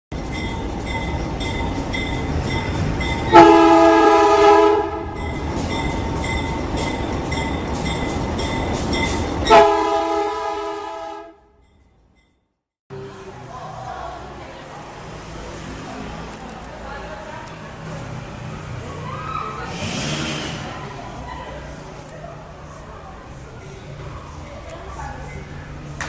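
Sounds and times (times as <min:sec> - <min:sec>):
locomotive air horn: 0:03.3 - 0:05.2, 0:09.5 - 0:11.5.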